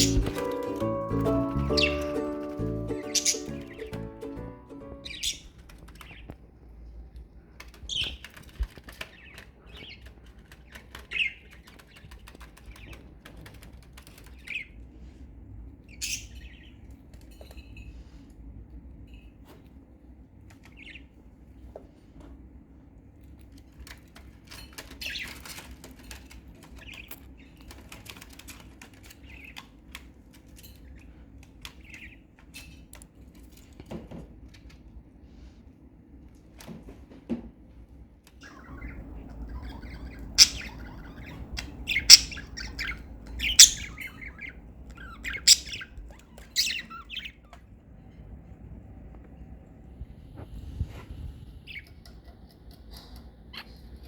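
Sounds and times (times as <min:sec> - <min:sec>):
budgerigars chirping and squawking: 0:00.0 - 0:06.2, 0:15.9 - 0:16.8, 0:38.4 - 0:47.6.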